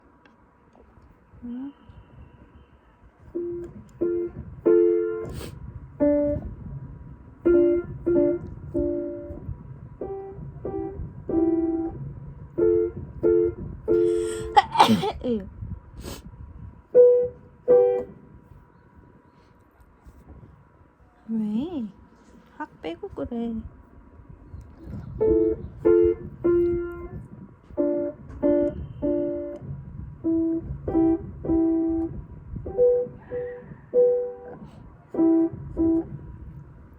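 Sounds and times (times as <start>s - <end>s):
piano note clusters: 3.3s - 5.3s, 7.4s - 14.6s, 16.9s - 18.3s, 25.2s - 36.5s
person sneezing: 14.2s - 15.2s.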